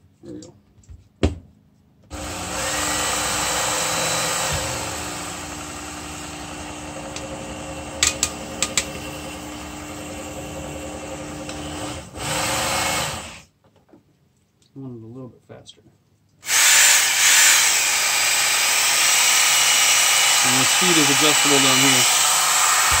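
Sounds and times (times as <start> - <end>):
belt knife sharpener running: 2.2 - 11.8, 16.5 - 23.0.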